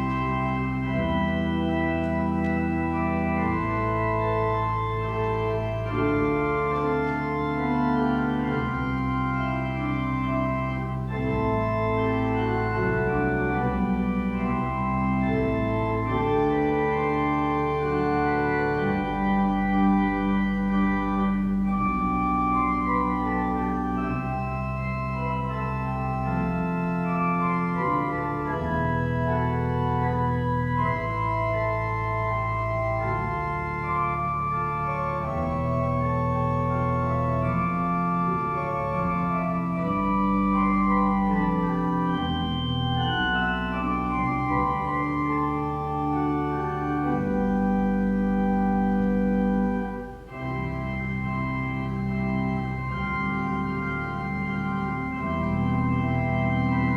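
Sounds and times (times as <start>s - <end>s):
church organ chords: 0.0s - 56.9s.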